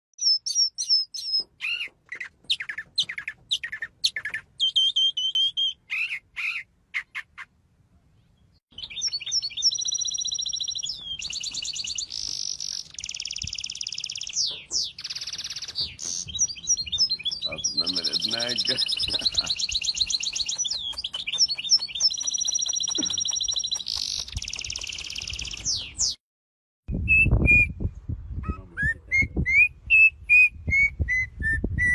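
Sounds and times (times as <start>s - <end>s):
small songbirds singing: 0.2s - 7.5s, 8.1s - 26.2s.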